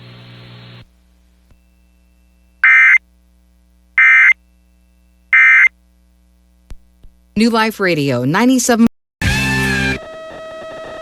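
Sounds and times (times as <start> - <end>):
digital data tone bursts: 2.6 - 3.0, 4.0 - 4.4, 5.4 - 5.7.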